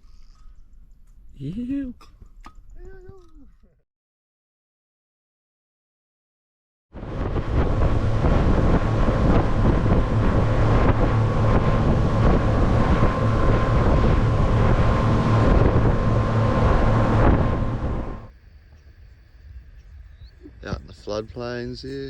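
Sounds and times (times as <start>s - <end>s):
motorboat engine drone: 7.0s - 18.3s
wind noise on microphone: 7.0s - 22.0s.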